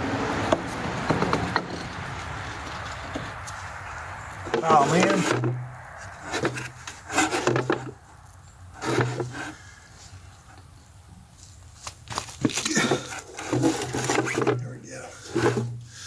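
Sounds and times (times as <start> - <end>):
metal parts scraping and knocking: 4.5 - 5.6, 12.4 - 14.7.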